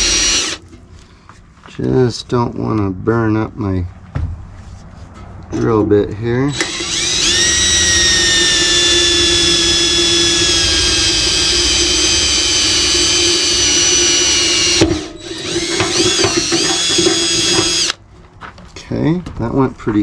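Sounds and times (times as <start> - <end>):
cordless drill boring metal: 0.0 - 0.6, 6.5 - 18.0.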